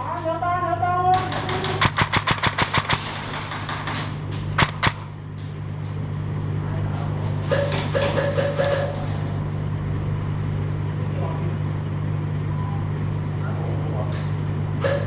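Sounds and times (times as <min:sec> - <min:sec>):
airsoft gun burst: 0:01.2 - 0:05.1
sharp airsoft gun shots: 0:01.2 - 0:05.1.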